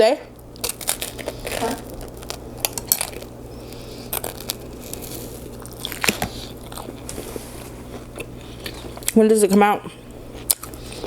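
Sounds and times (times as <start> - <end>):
low steady hum: 0.0 - 11.0
chewing with wet mouth smacks: 0.6 - 7.2, 7.8 - 9.2, 10.2 - 11.0.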